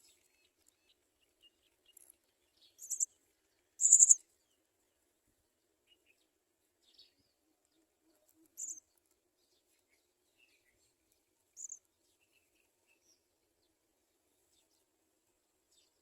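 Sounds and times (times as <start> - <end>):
faint scattered chirping: 0.0 - 3.2, 3.8 - 4.4, 8.1 - 8.9, 11.6 - 13.1
sparrow high-pitched chirps: 0.0 - 3.2, 3.8 - 4.2, 8.3 - 8.9, 11.6 - 13.2.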